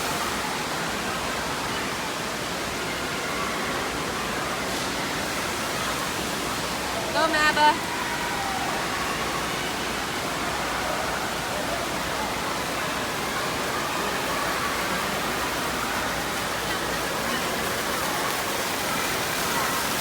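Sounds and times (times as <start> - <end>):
faint distant voices: 0.0 - 20.0
water running and splashing: 0.0 - 20.0.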